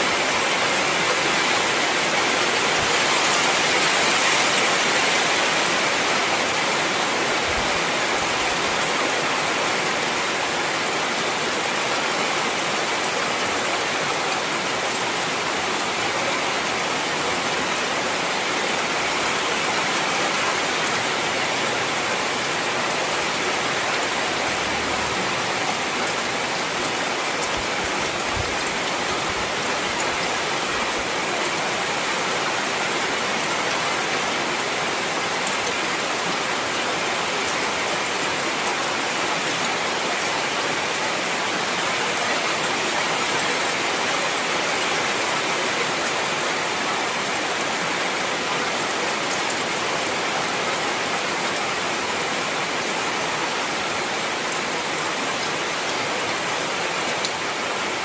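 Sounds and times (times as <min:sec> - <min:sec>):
heavy rain: 0:00.0 - 0:58.0.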